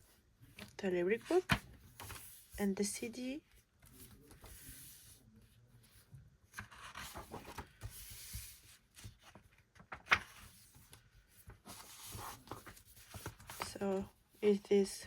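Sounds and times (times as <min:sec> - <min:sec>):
paper and plastic rustling: 0:06.0 - 0:14.1.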